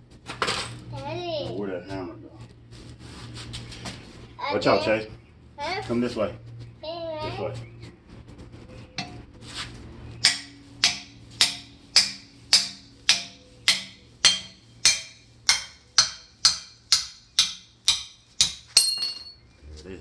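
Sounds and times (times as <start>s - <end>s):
hammer striking steel: 10.2s - 19.4s.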